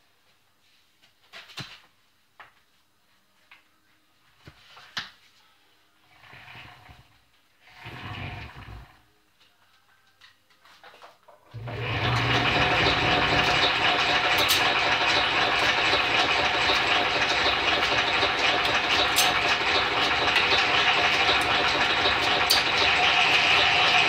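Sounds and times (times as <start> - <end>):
drill press motor running: 11.5 - 24.0.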